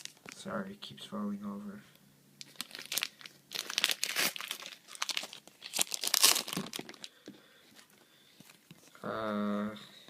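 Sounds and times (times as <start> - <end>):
card pack wrapper crinkling: 0.0 - 0.5, 2.4 - 7.2.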